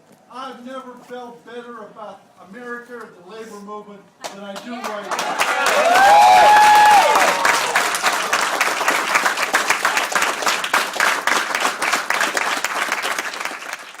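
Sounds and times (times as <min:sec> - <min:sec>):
crowd applauding: 0:04.2 - 0:14.0.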